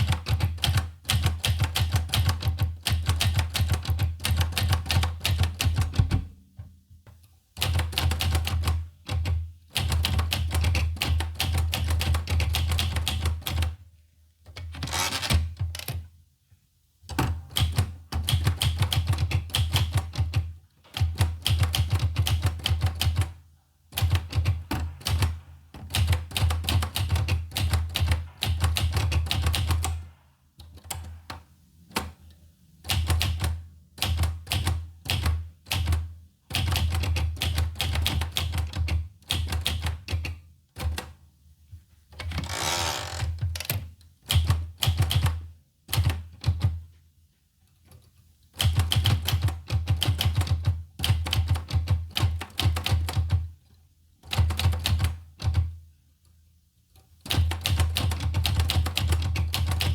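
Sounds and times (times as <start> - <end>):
typewriter keystrokes: 0.0 - 6.3, 7.6 - 13.8, 17.1 - 23.4, 24.0 - 32.1, 32.9 - 41.2, 42.2 - 46.8, 48.6 - 53.5, 54.2 - 55.7, 57.2 - 59.9
rasping typewriter sound: 14.8 - 15.5, 42.3 - 43.7.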